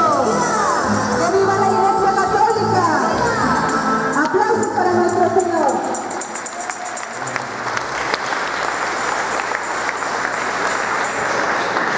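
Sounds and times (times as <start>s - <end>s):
crowd applauding: 6.2s - 11.9s.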